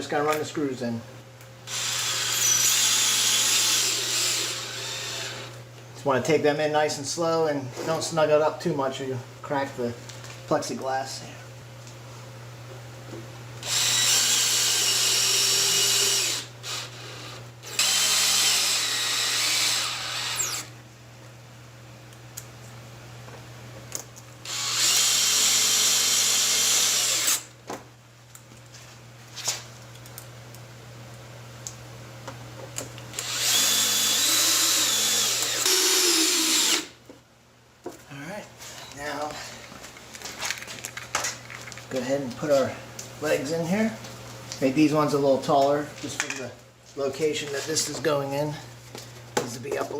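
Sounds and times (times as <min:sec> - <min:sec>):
power drill driving screws: 0:01.7 - 0:05.6, 0:13.6 - 0:20.7, 0:24.4 - 0:27.5, 0:33.1 - 0:36.9.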